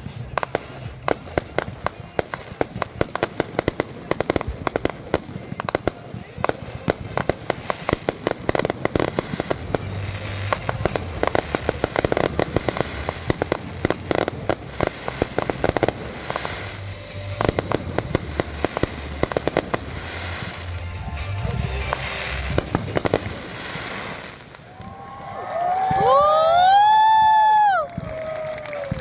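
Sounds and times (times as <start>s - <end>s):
fireworks cracking and popping: 0.0s - 29.0s
falling firework whistle: 15.8s - 18.8s, 24.7s - 29.0s.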